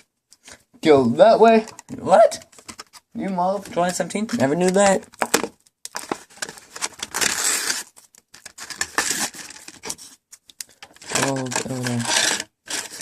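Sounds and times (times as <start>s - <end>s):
plastic packaging crinkling and tearing: 3.7s - 13.0s.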